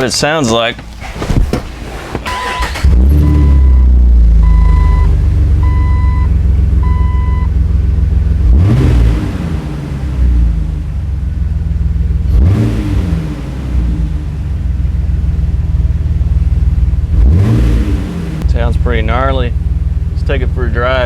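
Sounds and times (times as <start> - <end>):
engine idling and revving: 2.2 - 21.0
dashboard warning chime beeps: 2.3 - 7.5.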